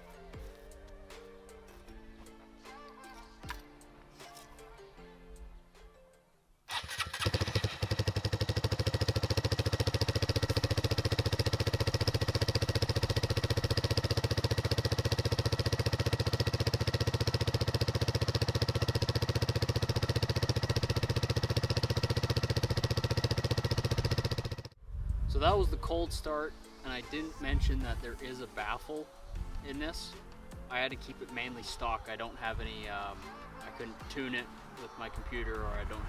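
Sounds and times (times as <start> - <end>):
motorcycle engine idling: 6.7 - 24.8, 29.4 - 36.0.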